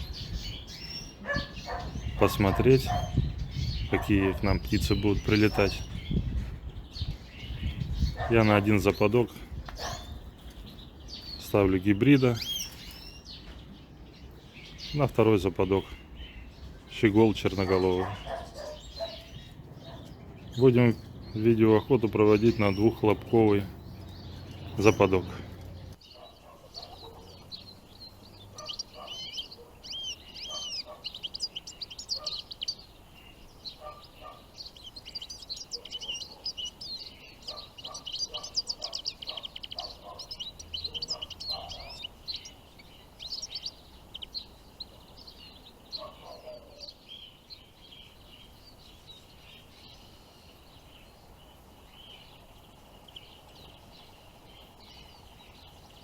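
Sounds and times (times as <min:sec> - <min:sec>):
finches twittering song: 0:00.0 - 0:56.0.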